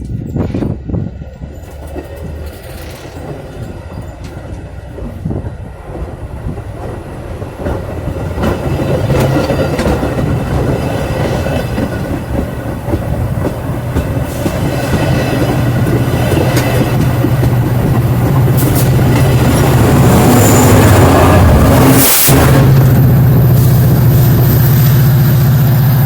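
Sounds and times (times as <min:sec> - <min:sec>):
wheels clicking over rail joints: 0:00.0 - 0:19.8
train passing on rails: 0:00.0 - 0:26.0.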